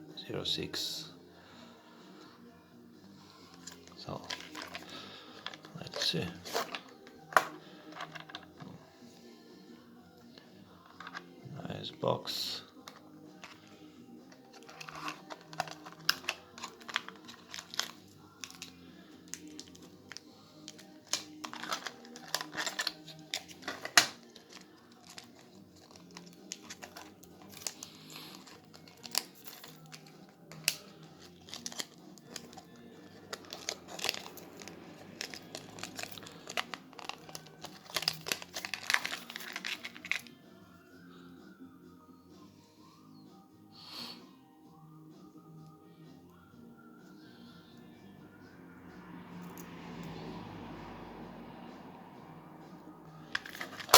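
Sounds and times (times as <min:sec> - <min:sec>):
quiet background music: 0:00.0 - 0:53.9
packaging crinkling and tearing: 0:14.5 - 0:18.7, 0:20.6 - 0:40.2, 0:53.4 - 0:53.9.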